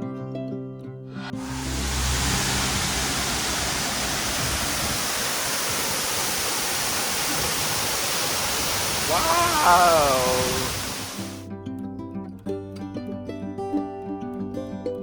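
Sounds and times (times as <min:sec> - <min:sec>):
waterfall roaring: 0:01.2 - 0:11.4.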